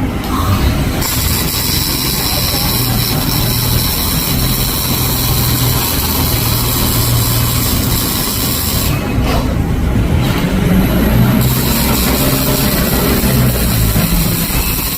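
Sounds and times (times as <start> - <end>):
low hum: 0.0 - 8.0
welding hiss: 1.0 - 9.0, 11.4 - 14.9.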